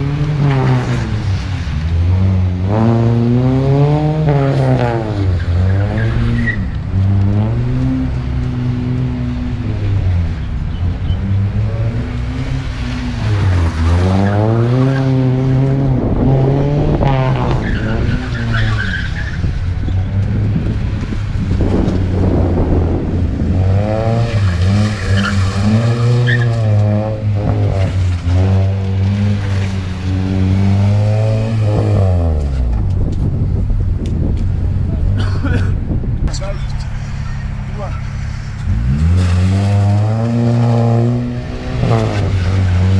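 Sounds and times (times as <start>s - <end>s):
car engine revving: 0.0s - 42.9s
tyre squeal: 25.0s - 26.7s.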